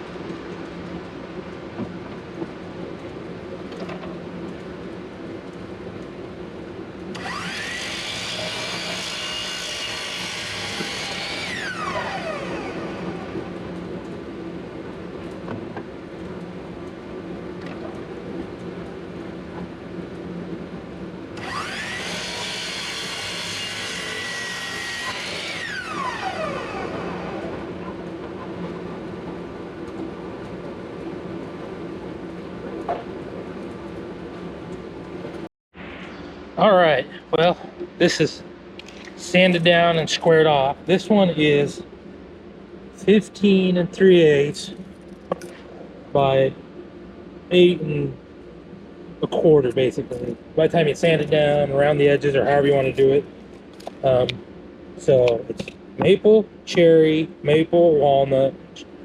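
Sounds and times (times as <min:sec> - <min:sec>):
low shop machine hum: 0:00.0 - 0:59.0
power saw motor: 0:07.1 - 0:13.6, 0:21.4 - 0:27.9.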